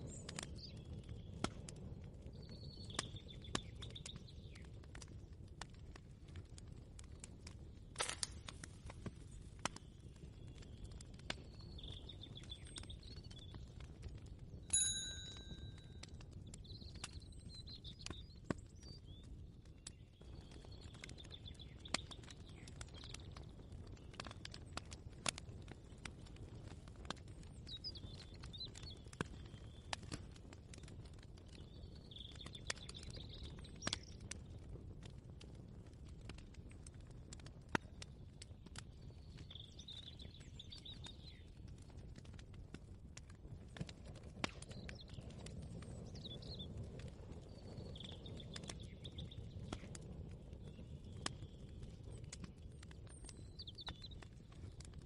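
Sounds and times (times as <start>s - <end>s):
bright ringing ding: 14.7s - 15.8s
light clicks and clinks: 14.7s - 16.0s
faint bird chirps: 47.4s - 49.9s.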